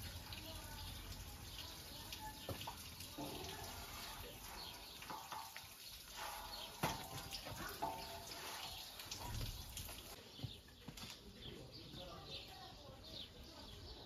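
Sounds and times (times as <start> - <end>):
water running from a tap: 0.0 - 10.2.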